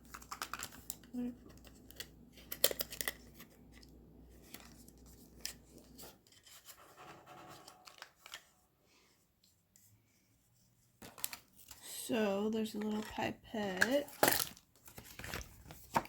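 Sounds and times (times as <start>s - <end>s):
package being opened: 0.0s - 5.7s, 11.0s - 11.8s, 13.8s - 16.0s.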